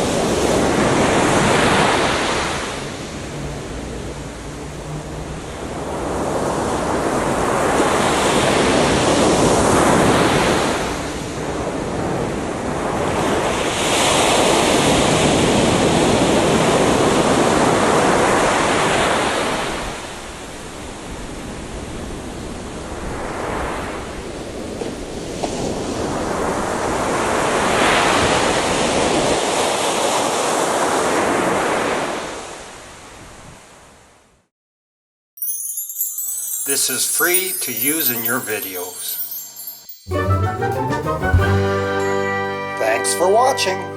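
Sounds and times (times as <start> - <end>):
surf breaking on a beach: 0.0 - 33.8.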